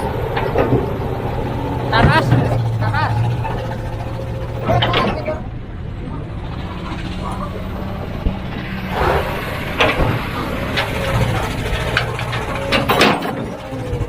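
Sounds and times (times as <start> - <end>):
sharp knocks and clanks: 0.0 - 5.4, 8.2 - 13.8
diesel engine running: 0.0 - 14.0.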